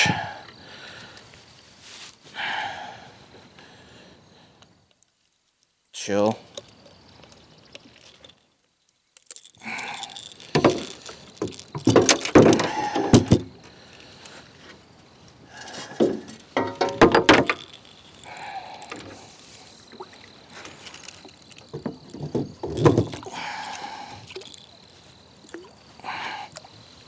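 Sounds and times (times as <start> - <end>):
rattling clicks: 10.2 - 13.4, 15.6 - 19.2
knocks and thuds in boat: 10.6 - 13.6, 15.9 - 17.6, 21.7 - 23.3.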